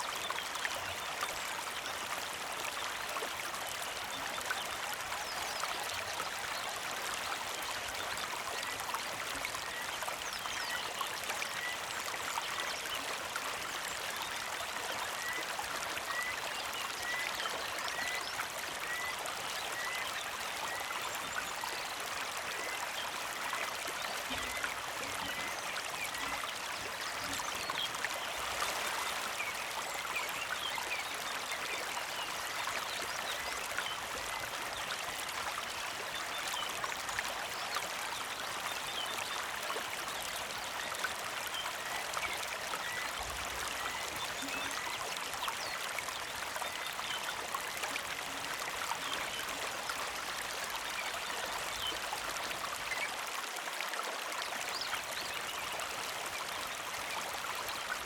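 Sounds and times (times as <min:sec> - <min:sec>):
creek water babbling: 0:00.0 - 0:58.0.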